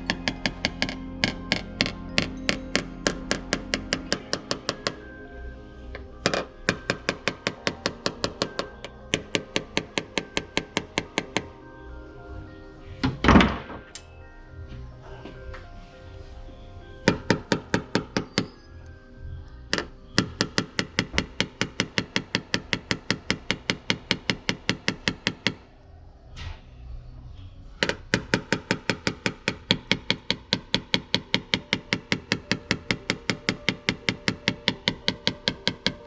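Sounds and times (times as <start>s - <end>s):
hammer tapping sheet metal: 19.7s - 25.6s.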